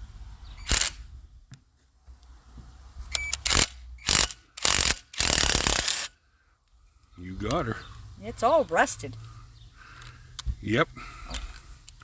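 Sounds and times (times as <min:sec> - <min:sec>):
socket ratchet clicking: 0:03.1 - 0:06.1.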